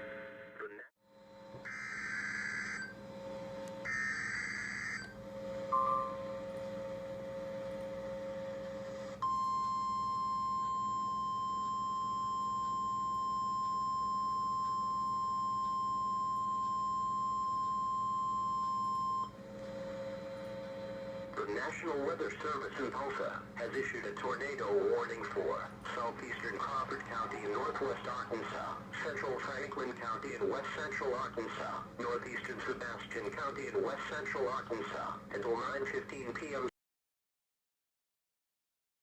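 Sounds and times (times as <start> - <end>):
steady single-pitch alarm tone: 1.1 - 22.0, 26.0 - 29.7
short beep: 5.7 - 6.4.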